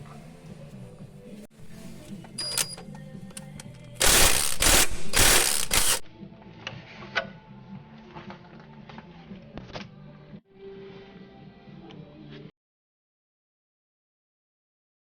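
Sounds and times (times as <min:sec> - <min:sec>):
soft background music: 0:00.0 - 0:12.5
mechanical rasping and clicking: 0:02.4 - 0:06.0.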